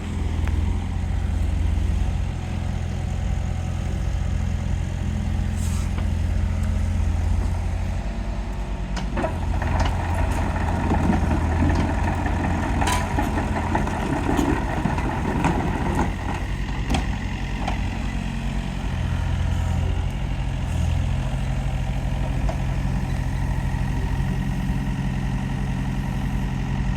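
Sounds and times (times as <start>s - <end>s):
excavator diesel engine running: 0.0s - 26.9s
loud busy machine noise: 9.0s - 18.0s.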